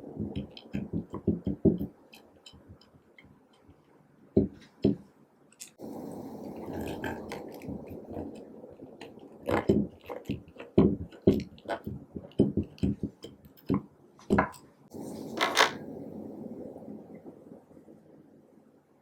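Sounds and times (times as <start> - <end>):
slime squelching: 5.6 - 13.8.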